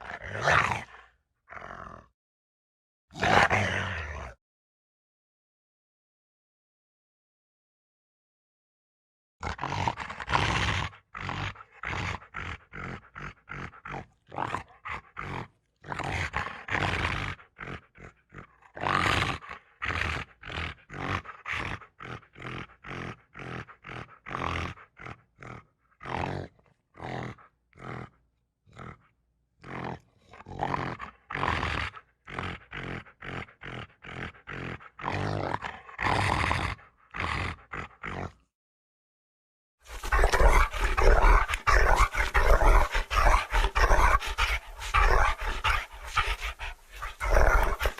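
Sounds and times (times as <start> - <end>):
creature calls and growls: 0.0 - 2.1, 3.1 - 4.4, 29.6 - 38.5, 39.9 - 47.9.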